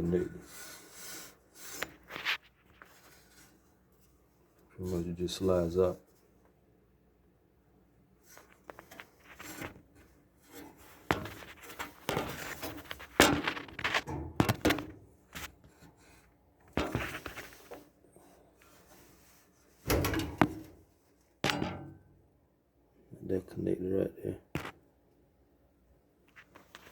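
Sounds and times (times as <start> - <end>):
sheet metal panels rattling: 10.5 - 15.1, 19.9 - 20.8, 21.4 - 22.0.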